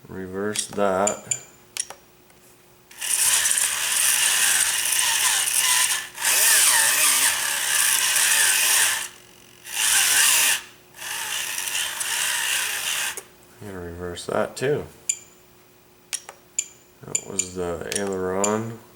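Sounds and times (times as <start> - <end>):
toy bulldozer electric motors whining: 2.9 - 13.3.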